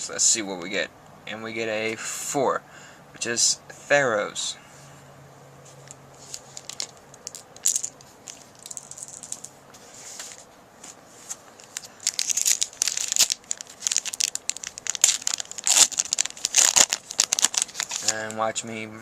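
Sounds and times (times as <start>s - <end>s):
foil wrapper crinkling and tearing: 11.6s - 18.3s.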